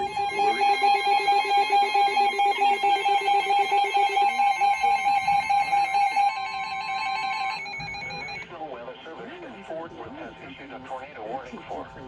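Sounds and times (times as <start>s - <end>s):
rapidly pulsing lower tone: 0.0s - 8.4s
steady high alarm tone: 0.0s - 8.5s.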